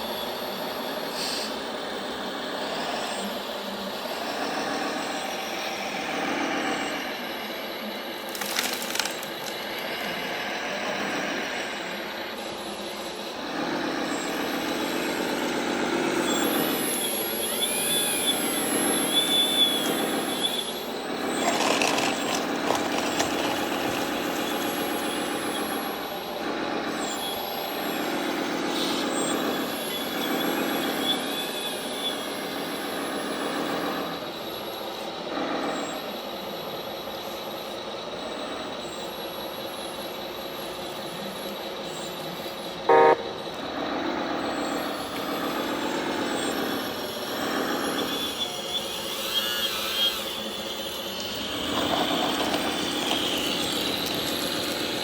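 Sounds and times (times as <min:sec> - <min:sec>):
short loud horn toot: 0:42.9 - 0:43.4
simulated diesel engine sound: 0:42.9 - 0:46.2.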